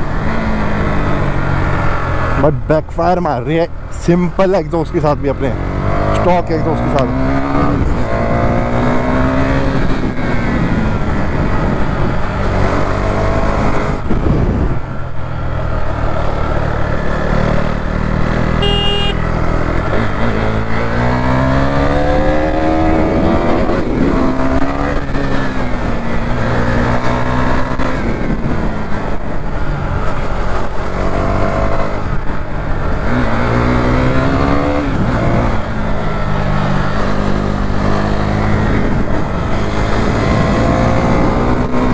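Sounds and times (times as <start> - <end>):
motorcycle engine revving: 5.0 - 41.9
short high beep: 18.6 - 19.2.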